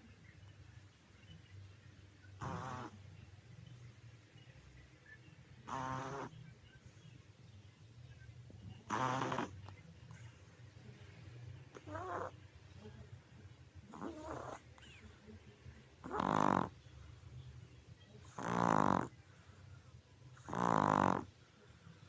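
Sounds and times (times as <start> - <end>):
dog snoring loudly: 2.4 - 3.0, 5.6 - 6.4, 8.8 - 9.6, 11.7 - 12.3, 13.9 - 14.6, 16.0 - 16.8, 18.2 - 19.1, 20.4 - 21.3.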